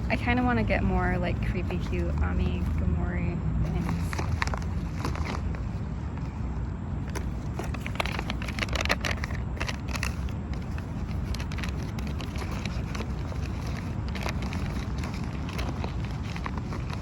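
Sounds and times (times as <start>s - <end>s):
steady low rumble: 0.0s - 17.0s
packaging rustling and crackling: 3.7s - 17.0s.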